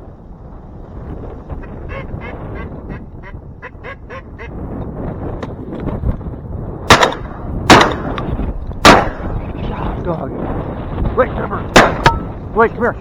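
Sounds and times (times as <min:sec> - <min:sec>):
wind buffeting microphone: 0:00.0 - 0:13.0
ducks quacking: 0:01.6 - 0:04.6
shotgun shots: 0:06.9 - 0:09.4, 0:11.7 - 0:12.4.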